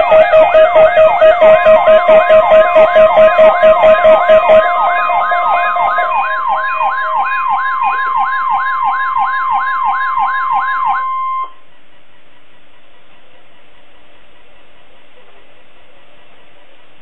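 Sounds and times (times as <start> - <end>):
falling siren sweep: 0.0 - 11.6
steady alert tone: 0.0 - 11.6.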